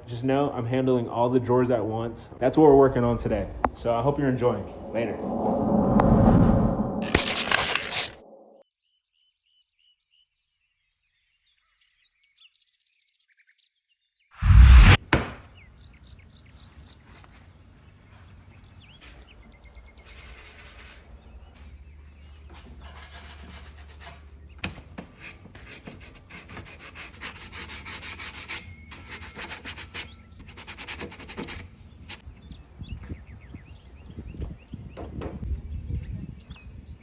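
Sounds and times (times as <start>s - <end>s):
sandpaper rubbing on wood: 7.0s - 8.2s, 20.0s - 32.2s.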